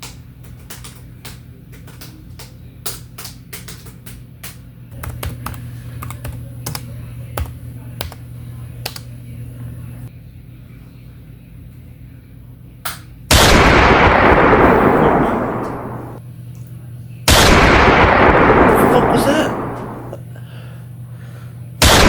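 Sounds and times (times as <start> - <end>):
keyboard keys clicking: 0.0 - 9.2
low steady hum: 4.8 - 22.0.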